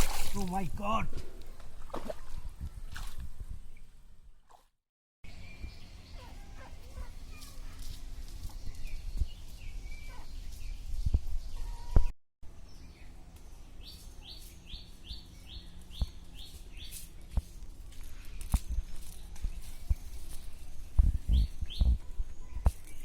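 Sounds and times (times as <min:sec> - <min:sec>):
small birds chirping: 0:05.3 - 0:23.0
low wind-like rumble: 0:18.3 - 0:22.8.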